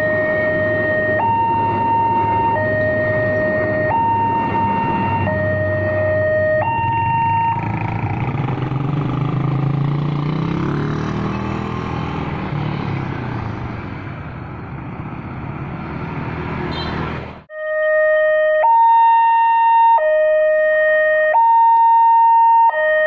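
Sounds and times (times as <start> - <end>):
two-tone crossing siren: 0.0 - 8.5, 17.5 - 23.0.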